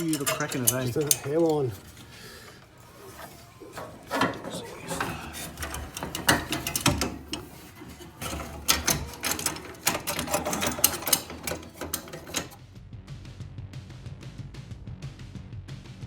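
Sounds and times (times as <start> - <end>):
metal parts and tools clattering: 0.0 - 12.6.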